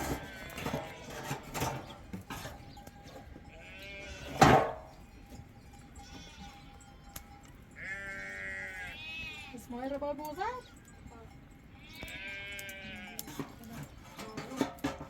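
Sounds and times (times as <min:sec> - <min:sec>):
sheep bleating: 0:00.0 - 0:01.5, 0:03.4 - 0:04.6, 0:06.0 - 0:09.7, 0:11.8 - 0:13.6.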